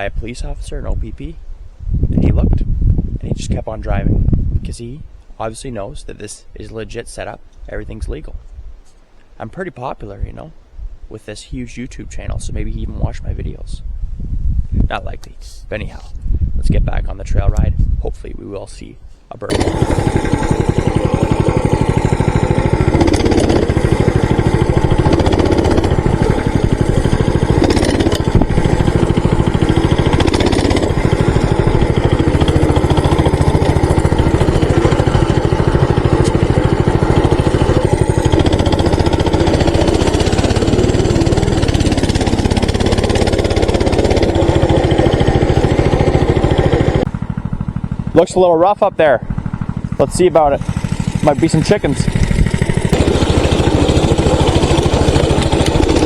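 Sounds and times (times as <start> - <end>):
small engine chugging: 19.5 - 56.0.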